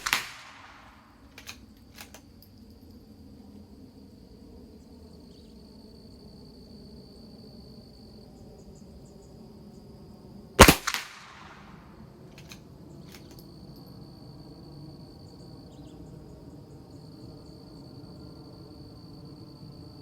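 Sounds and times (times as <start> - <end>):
rifle shot with echo: 0.0 - 1.0, 10.6 - 11.8.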